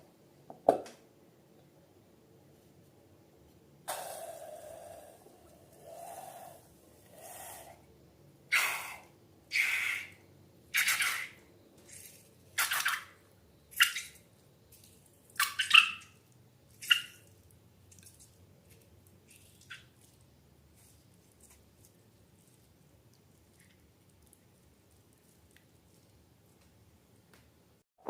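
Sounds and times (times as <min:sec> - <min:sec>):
slime squelching: 0:13.7 - 0:26.8.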